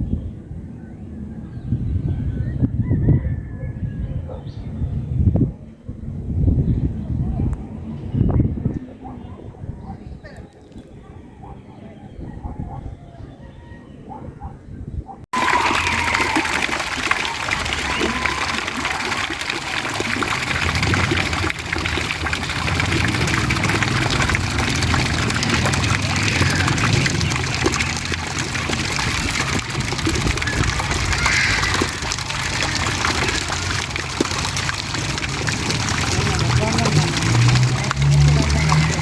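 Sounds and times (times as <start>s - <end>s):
running water rushing: 15.3s - 39.0s
low rumbling: 15.4s - 39.0s.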